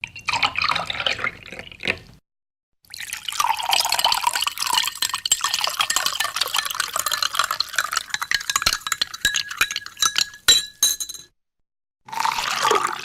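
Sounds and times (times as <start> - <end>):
drink pouring into glass: 0.1 - 1.6, 2.9 - 10.6, 12.1 - 13.0
small clinks: 5.3 - 11.3.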